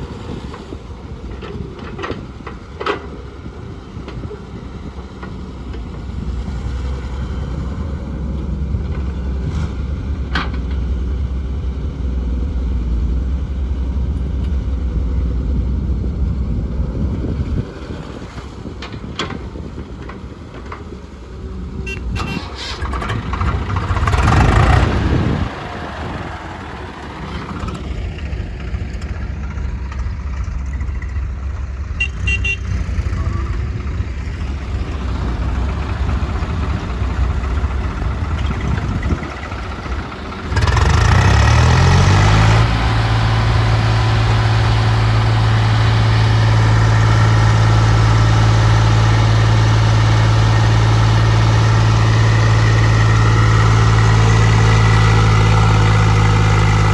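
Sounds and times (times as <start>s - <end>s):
diesel engines running: 0.0s - 56.9s
loud engine revving: 22.1s - 29.1s, 32.1s - 56.9s.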